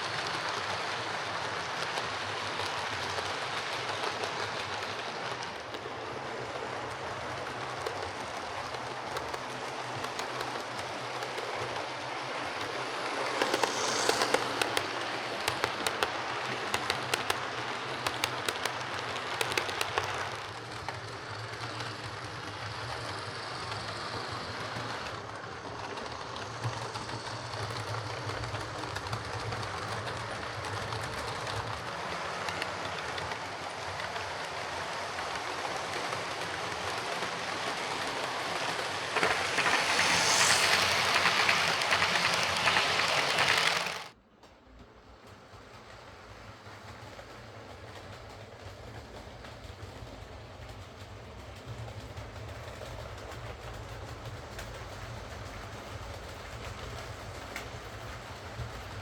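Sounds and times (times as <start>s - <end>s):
wheels clicking over rail joints: 0.0s - 59.0s
model train motor hum: 0.1s - 44.2s.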